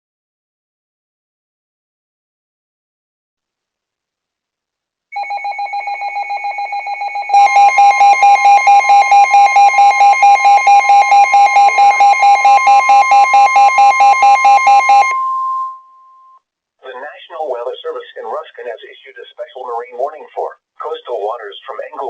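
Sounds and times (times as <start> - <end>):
loud steady alarm tone: 5.2 - 16.4
radio alert beeping: 7.3 - 15.8.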